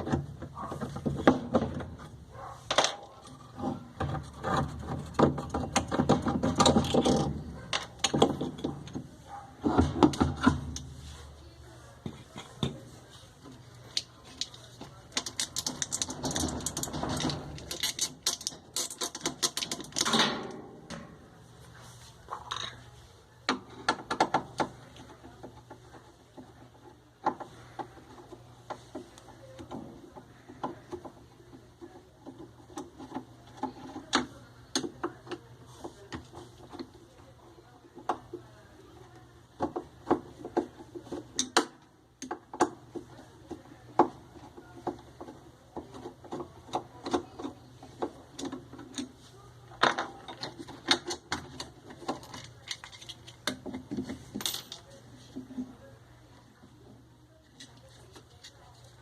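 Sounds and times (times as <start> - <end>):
tools and parts clicking and rattling: 0.0 - 11.0, 12.0 - 21.3, 39.2 - 55.7.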